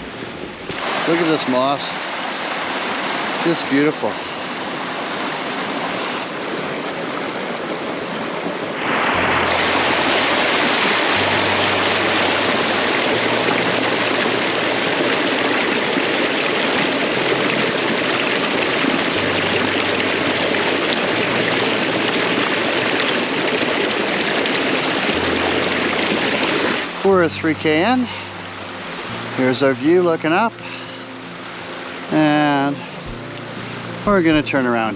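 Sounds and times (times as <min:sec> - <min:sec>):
creek rushing over rocks: 0:00.0 - 0:34.9.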